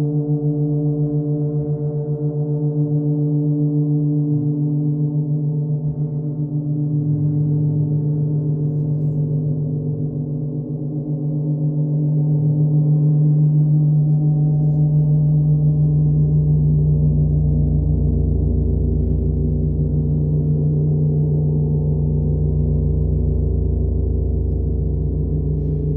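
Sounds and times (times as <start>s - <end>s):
gong droning under friction mallet: 0.0s - 25.9s
deep low rumble: 12.2s - 25.9s.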